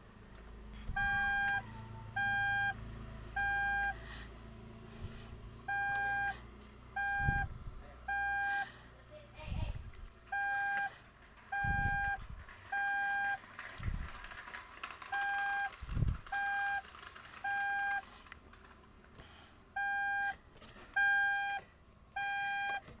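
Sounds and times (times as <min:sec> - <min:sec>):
electronic alarm beeping: 0:01.0 - 0:04.0, 0:05.7 - 0:06.4, 0:07.0 - 0:07.5, 0:08.1 - 0:08.6, 0:10.3 - 0:10.9, 0:11.6 - 0:12.2, 0:12.8 - 0:13.4, 0:15.2 - 0:15.7, 0:16.4 - 0:16.8, 0:17.5 - 0:18.0, 0:19.8 - 0:20.4, 0:21.0 - 0:21.6, 0:22.2 - 0:22.8
dull low thumps: 0:07.1 - 0:07.8, 0:11.6 - 0:12.4.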